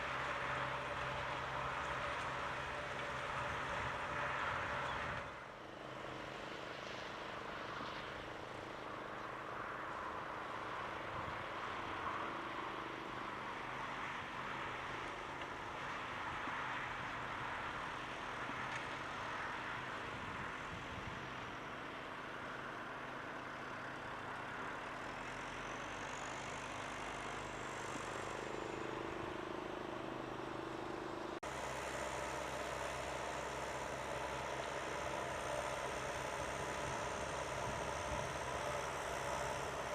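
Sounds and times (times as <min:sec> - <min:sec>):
tractor diesel engine running: 0:00.0 - 0:07.6, 0:17.1 - 0:39.9.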